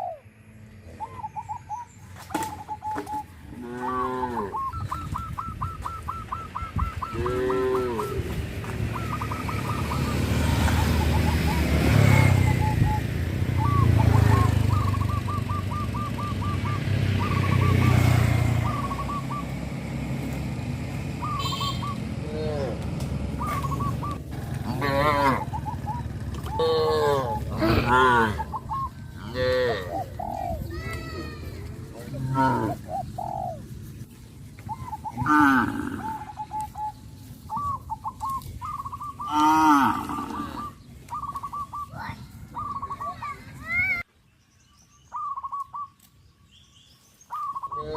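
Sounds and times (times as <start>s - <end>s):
bird chirping: 0.0s - 47.9s
cattle mooing: 3.5s - 4.6s, 7.1s - 8.3s, 22.2s - 22.8s, 24.6s - 25.5s, 26.6s - 28.5s, 29.2s - 30.1s, 32.0s - 32.8s, 35.2s - 36.3s, 39.3s - 40.8s
vehicle engine running: 4.6s - 30.6s.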